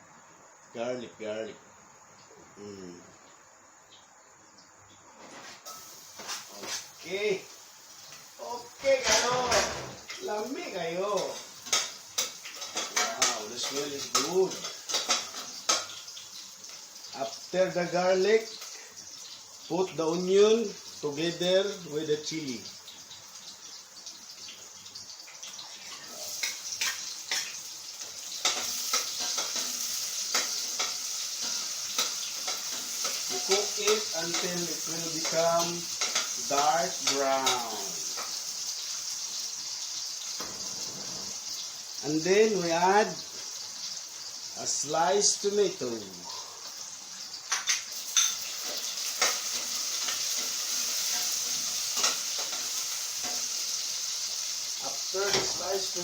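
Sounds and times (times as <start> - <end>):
onion frying in hot oil: 1.7 - 56.0
spoon stirring against pan: 11.1 - 16.2, 25.7 - 38.6, 47.4 - 54.0.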